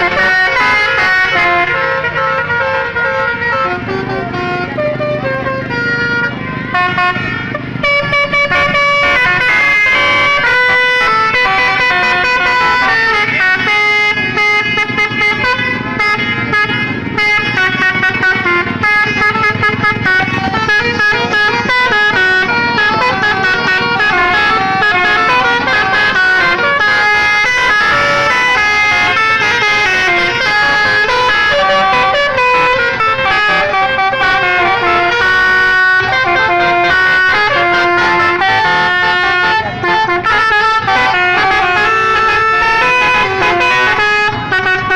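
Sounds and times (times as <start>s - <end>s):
musical bus horns playing tunes: 0.0s - 44.9s.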